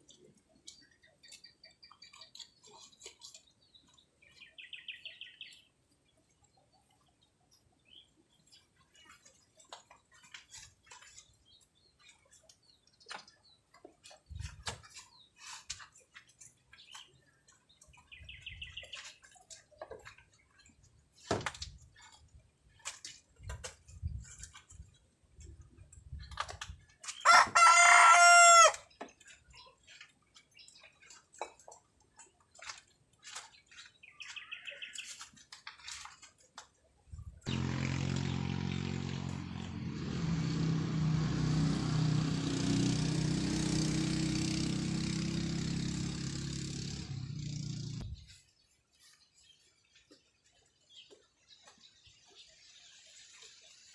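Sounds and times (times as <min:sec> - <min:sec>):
rooster crowing: 0:27.3 - 0:28.8
motor running steadily: 0:37.5 - 0:48.2.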